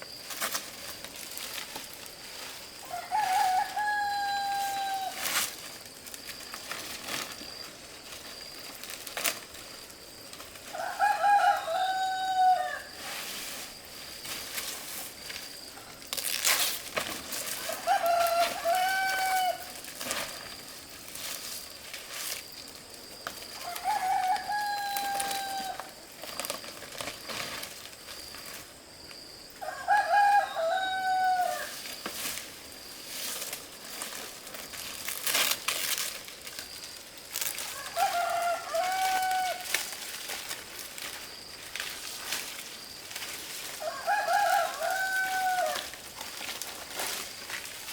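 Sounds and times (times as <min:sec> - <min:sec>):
rooster crowing: 0:02.8 - 0:05.2, 0:10.6 - 0:13.0, 0:17.5 - 0:19.8, 0:23.6 - 0:26.0, 0:29.6 - 0:31.8, 0:37.6 - 0:39.8, 0:43.7 - 0:46.0.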